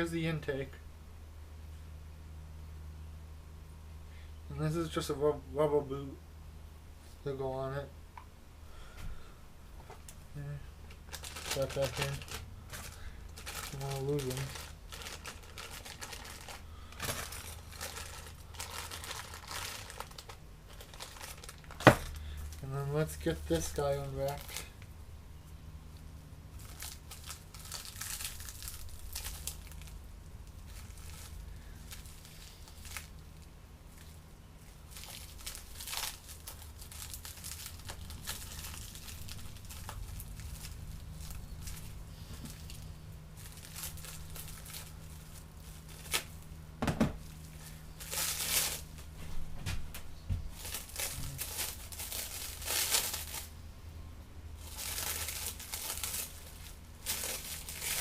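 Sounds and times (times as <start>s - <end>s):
steady low hum: 0.0s - 58.0s
packaging crinkling and rustling: 10.9s - 24.9s, 26.6s - 46.5s, 47.1s - 49.4s, 50.4s - 53.5s, 54.6s - 58.0s.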